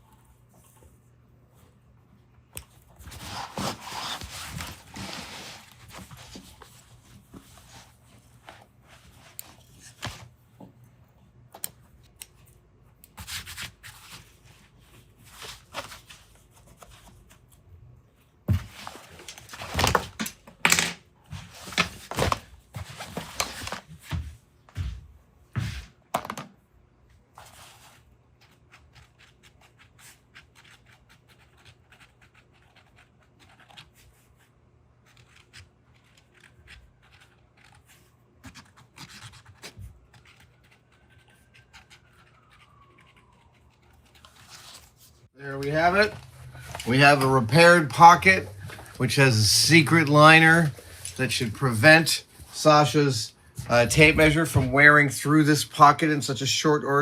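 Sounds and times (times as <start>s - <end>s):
rubbing and scraping of fabric: 3.0s - 10.2s.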